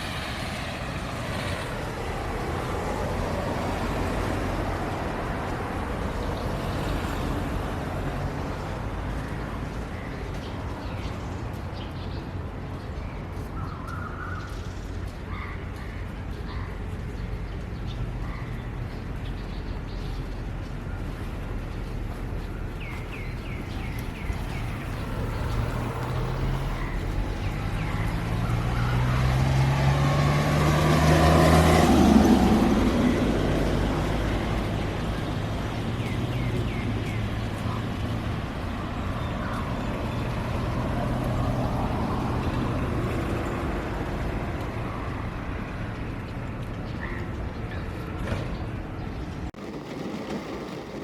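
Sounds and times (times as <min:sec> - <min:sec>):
vehicle engine driving past: 0:24.2 - 0:35.7.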